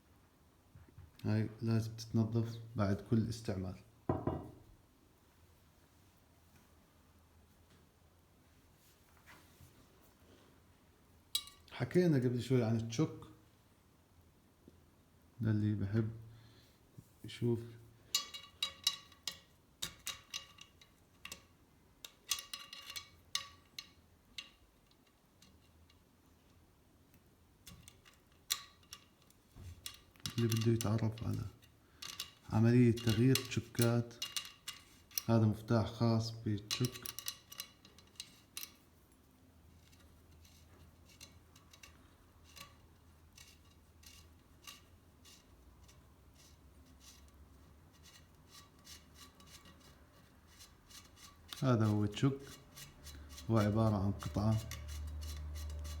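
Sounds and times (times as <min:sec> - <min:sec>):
small metal parts clicking: 0:18.0 - 0:26.6, 0:27.6 - 0:35.7, 0:36.6 - 0:38.8, 0:39.7 - 0:56.0.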